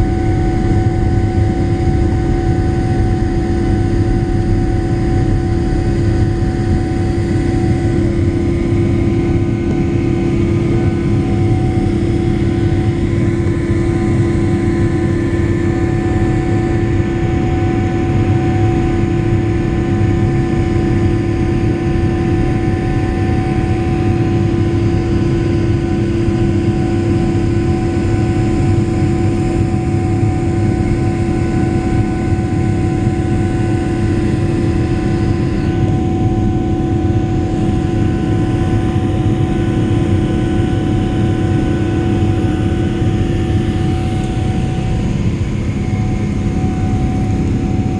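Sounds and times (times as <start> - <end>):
jet engines rumbling in cabin: 0.0 - 47.9.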